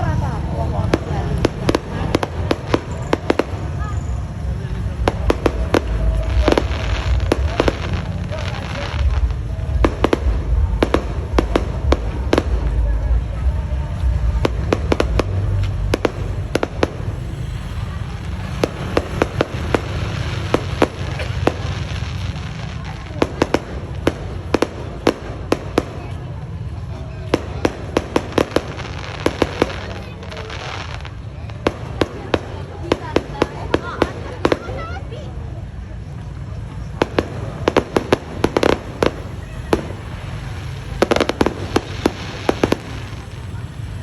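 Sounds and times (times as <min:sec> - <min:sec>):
steady low rumble: 0:00.0 - 0:21.6
fireworks bangs: 0:00.0 - 0:44.0.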